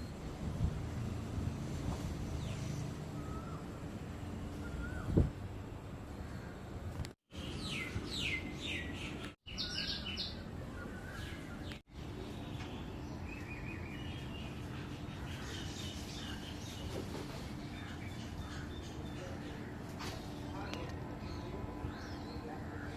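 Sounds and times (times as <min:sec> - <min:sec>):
low wind rumble: 0:00.0 - 0:11.8
songbirds chirping: 0:00.0 - 0:22.9.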